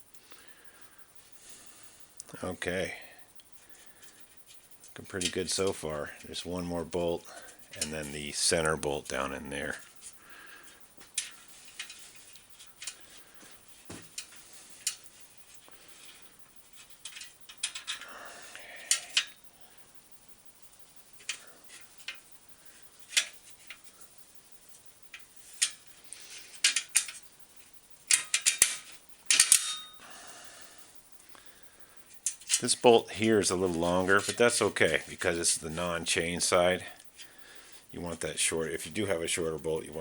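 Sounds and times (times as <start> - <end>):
metallic clicks of hand tools: 28.1 - 30.0.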